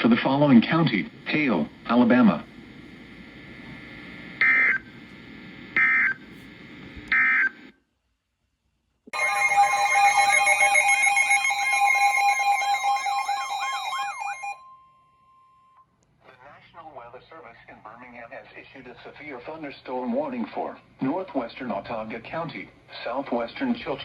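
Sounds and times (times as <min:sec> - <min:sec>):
data burst screeches: 0:09.2 - 0:14.6
warbling tone: 0:09.2 - 0:14.6
two-tone attention signal: 0:09.2 - 0:14.9.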